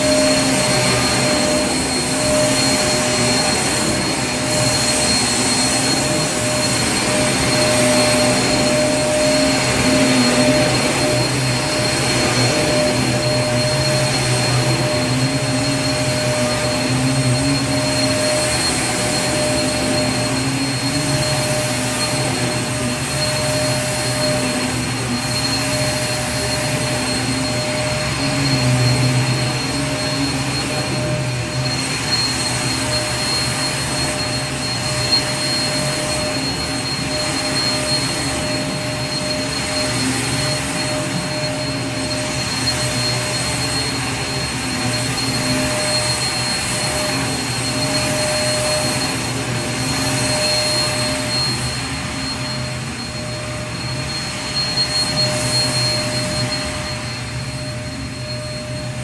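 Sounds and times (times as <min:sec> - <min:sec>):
vacuum cleaner running: 0:00.0 - 0:59.0.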